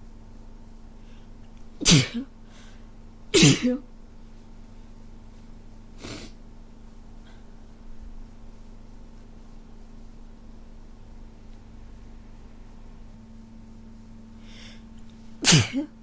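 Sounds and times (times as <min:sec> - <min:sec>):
person sneezing: 0:01.8 - 0:02.3, 0:03.4 - 0:03.8, 0:06.0 - 0:06.4, 0:15.4 - 0:16.0.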